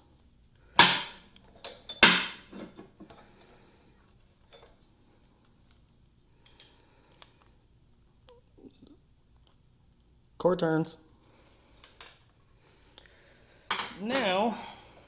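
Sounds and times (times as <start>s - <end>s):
metal clinking and knocking: 0.8s - 3.3s, 13.7s - 14.5s.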